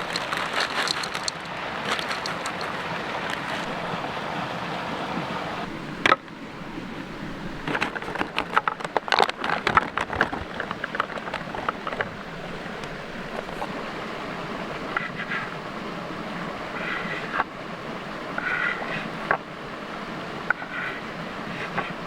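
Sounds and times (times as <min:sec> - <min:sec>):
creek water rushing: 0:00.0 - 0:22.0
clicks and knocks: 0:07.7 - 0:12.1.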